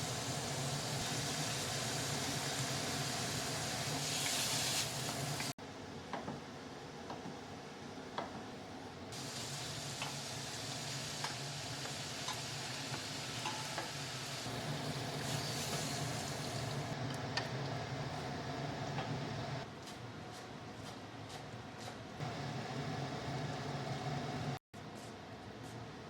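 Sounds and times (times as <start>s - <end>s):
steady sizzling hiss: 9.2s - 17.0s.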